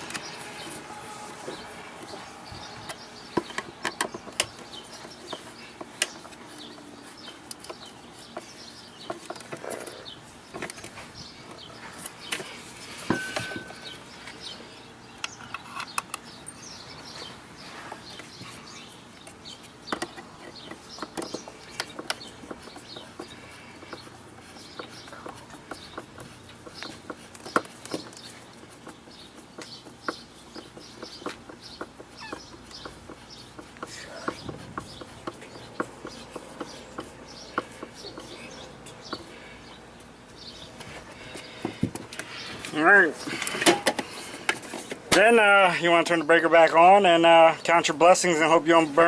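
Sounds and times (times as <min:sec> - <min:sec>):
birds calling and clucking: 0:00.0 - 0:49.0
sharp clicks and knocks: 0:02.8 - 0:06.8, 0:19.2 - 0:39.3.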